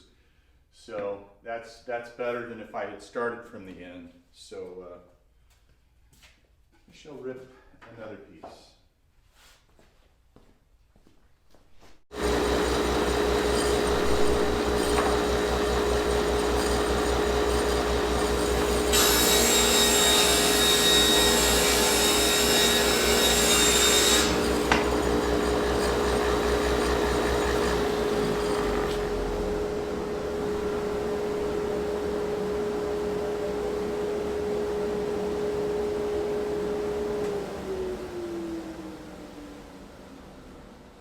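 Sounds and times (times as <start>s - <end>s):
saw ripping wood board: 12.1s - 29.6s
table saw motor whine: 12.1s - 41.0s.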